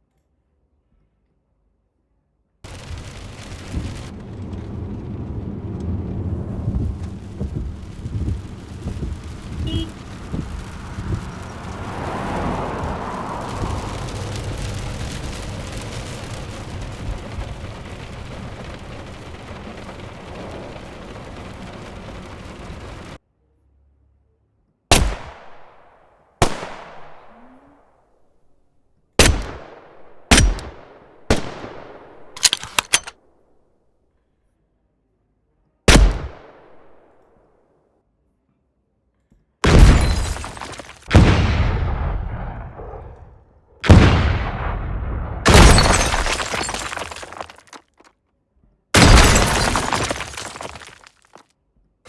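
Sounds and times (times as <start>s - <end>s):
gunshot-like blasts: 35.9s - 36.6s, 43.8s - 45.9s.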